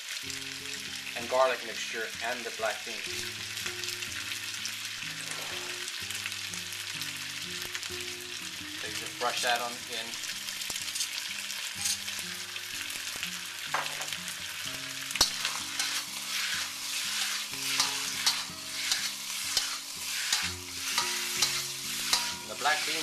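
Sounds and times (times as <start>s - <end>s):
chicken sizzling in hot oil: 0.0s - 23.0s
stirring strokes in a pan: 4.6s - 6.2s, 14.9s - 23.0s.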